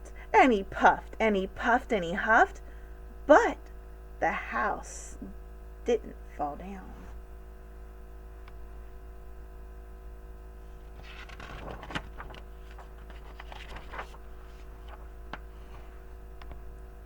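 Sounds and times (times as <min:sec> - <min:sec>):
mains hum: 0:00.0 - 0:17.0
paper page rustling: 0:10.6 - 0:16.1.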